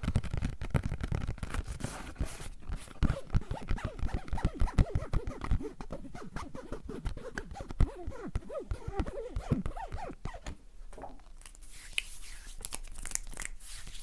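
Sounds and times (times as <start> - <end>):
pitch-bent tapping and scratching: 2.7 - 11.2.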